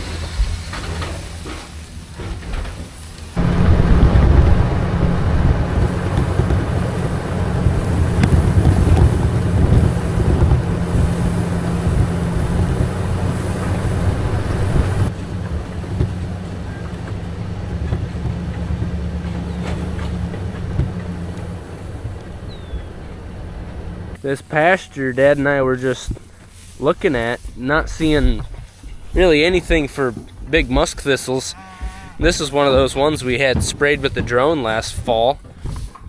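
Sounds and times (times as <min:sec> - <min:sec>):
vehicle engine running: 0:00.0 - 0:35.6
wind noise: 0:03.4 - 0:24.2, 0:25.1 - 0:31.1.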